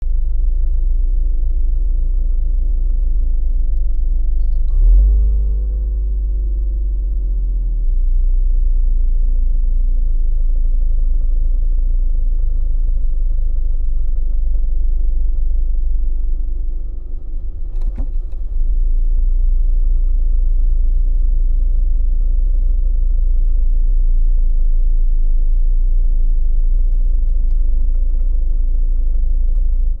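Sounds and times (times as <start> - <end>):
road and engine rumble in car: 0.0 - 30.0.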